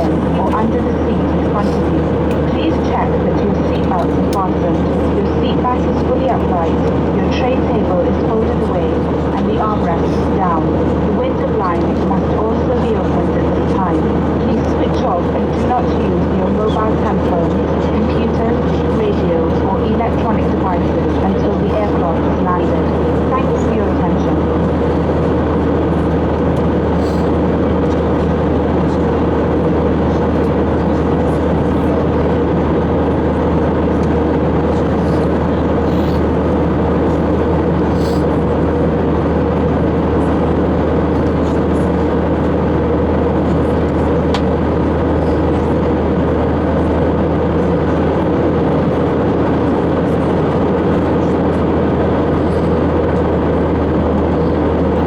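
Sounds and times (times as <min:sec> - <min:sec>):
airplane engines droning: 0:00.0 - 0:55.0
low hum: 0:00.0 - 0:55.0.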